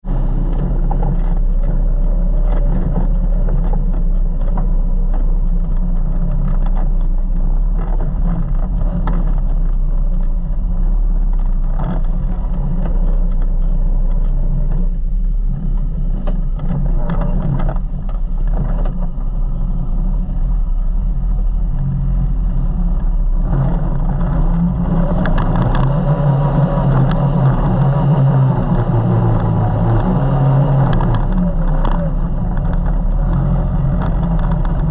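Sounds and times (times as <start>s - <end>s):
vehicle engine running: 0.0s - 34.9s
knocks and clatter: 22.8s - 34.9s.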